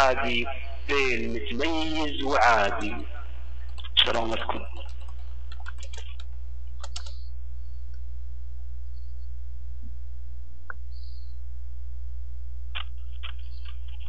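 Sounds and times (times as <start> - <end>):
steady low hum: 0.0 - 14.0
clicks: 3.7 - 7.3.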